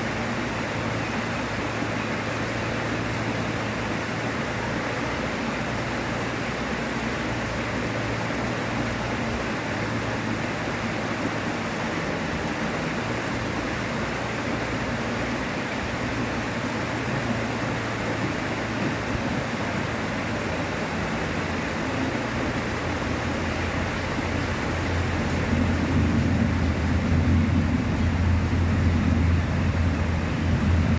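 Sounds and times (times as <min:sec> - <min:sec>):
river water rushing: 0:00.0 - 0:30.9
low hum: 0:21.3 - 0:30.9.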